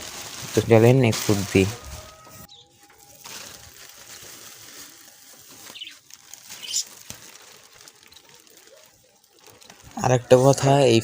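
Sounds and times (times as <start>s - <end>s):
small birds chirping: 2.4s - 3.2s, 5.0s - 9.9s.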